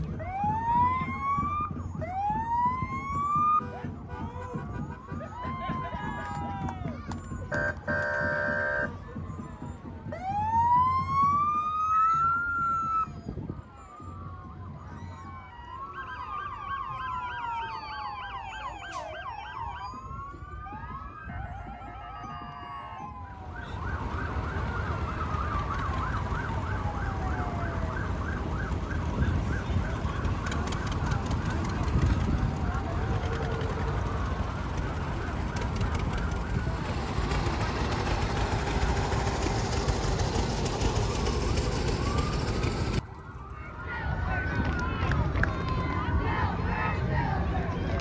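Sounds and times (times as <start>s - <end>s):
siren rising in pitch: 0.0s - 3.8s, 7.4s - 44.2s
air horn blasts: 7.5s - 8.9s
low engine rumble: 23.1s - 48.0s.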